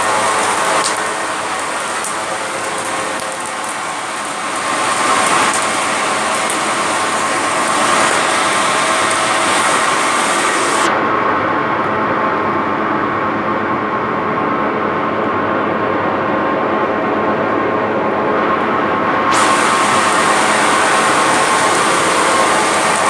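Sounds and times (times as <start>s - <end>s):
high hiss: 0.0s - 10.9s, 18.6s - 23.0s
furnace air blast rushing: 0.0s - 11.0s, 18.6s - 23.0s.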